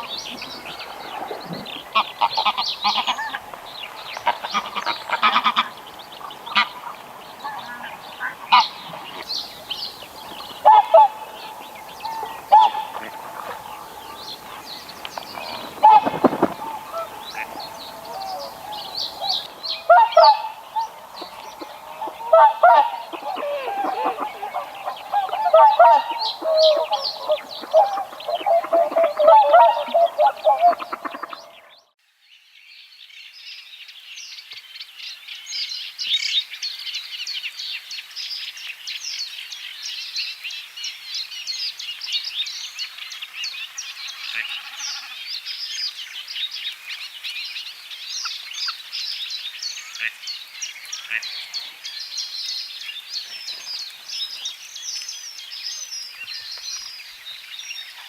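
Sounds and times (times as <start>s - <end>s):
small birds chirping: 0.0s - 31.9s
goose honking: 1.9s - 3.5s, 4.2s - 9.2s, 10.4s - 31.5s.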